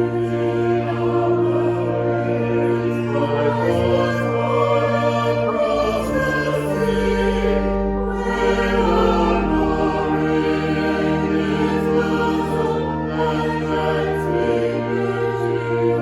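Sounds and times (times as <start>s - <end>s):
choir singing: 0.0s - 16.0s
low bass notes: 0.0s - 16.0s.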